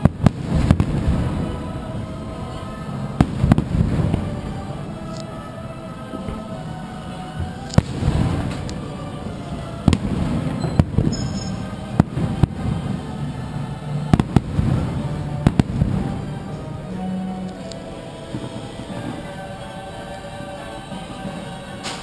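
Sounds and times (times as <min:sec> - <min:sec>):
fireworks bangs: 0:00.0 - 0:02.1, 0:03.2 - 0:04.7, 0:07.4 - 0:08.8, 0:09.8 - 0:13.1, 0:14.1 - 0:16.4
show music: 0:00.0 - 0:22.0.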